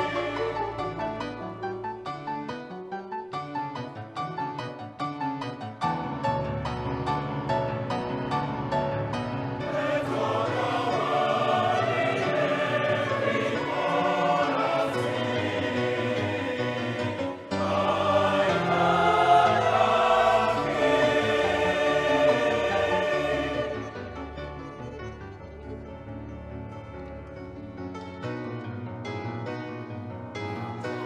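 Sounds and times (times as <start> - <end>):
choir singing sustained chords: 0.0 - 2.4, 9.5 - 24.9.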